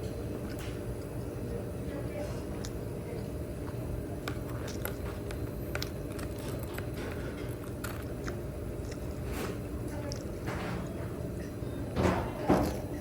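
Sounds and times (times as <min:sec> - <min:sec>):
low background hum: 0:00.0 - 0:13.0
biting and chewing crunches: 0:04.3 - 0:10.4.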